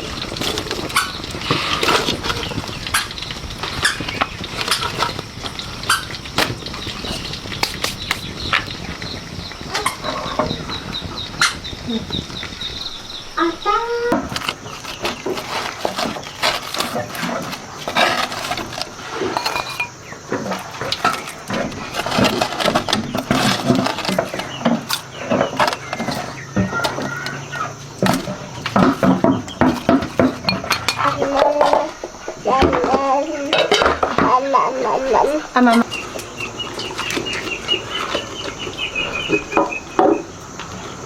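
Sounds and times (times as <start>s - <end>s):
voices: 0.0s - 41.0s
dishes and utensils clinking: 15.1s - 34.4s.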